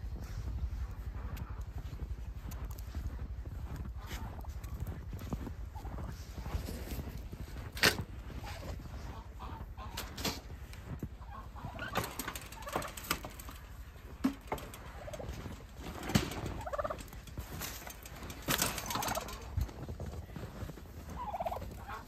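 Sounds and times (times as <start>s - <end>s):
poultry calling: 8.0s - 19.6s, 20.7s - 22.0s
sharp knocks and clatter: 11.8s - 19.8s.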